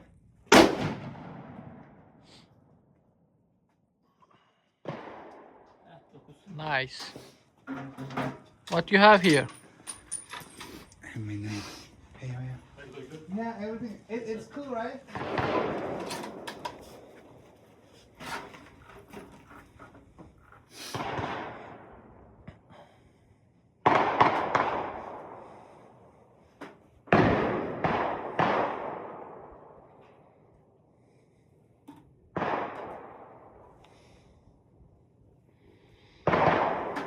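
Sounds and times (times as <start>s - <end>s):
gunshots with long echo: 0.5s - 2.6s, 4.8s - 6.0s, 15.0s - 17.4s, 20.9s - 22.4s, 23.8s - 26.2s, 27.0s - 30.6s, 32.3s - 33.9s, 36.1s - 37.0s.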